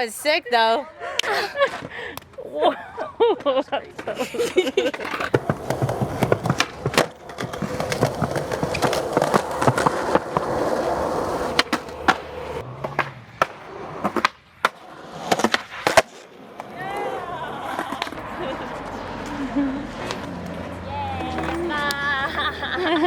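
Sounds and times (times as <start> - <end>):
skateboard clacking on ground: 3.4 - 22.5
skateboard wheels rumbling: 3.4 - 23.0.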